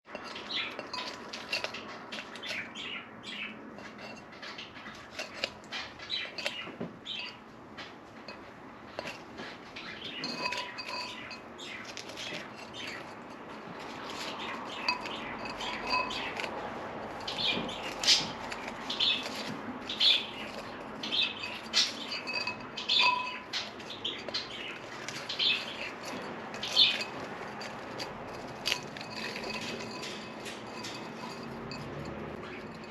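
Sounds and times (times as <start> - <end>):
bird scraping in a vase: 0.1 - 32.9
bird chirps: 17.2 - 27.1.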